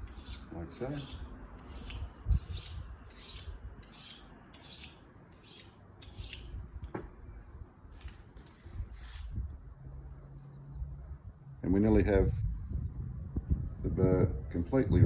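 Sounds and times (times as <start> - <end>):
knife rasping on honing steel: 0.0 - 6.5.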